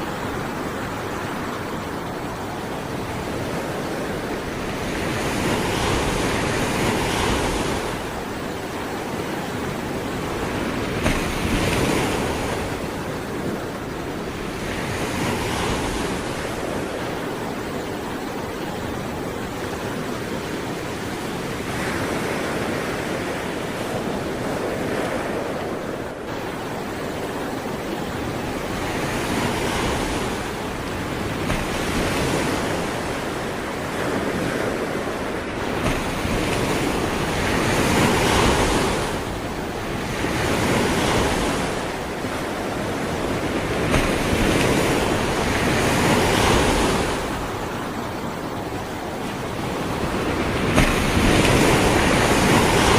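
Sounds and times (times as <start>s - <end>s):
sea waves breaking on shore: 0.0s - 52.9s
wind on microphone: 0.0s - 52.9s.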